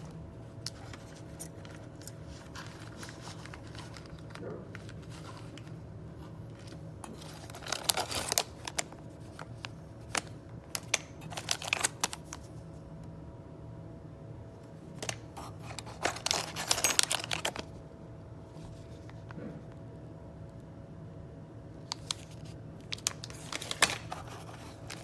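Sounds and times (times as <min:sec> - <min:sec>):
steady low hum: 0:00.0 - 0:25.0
packaging crinkling and clicking: 0:00.6 - 0:05.8, 0:06.4 - 0:12.5, 0:14.9 - 0:17.7, 0:21.8 - 0:25.0.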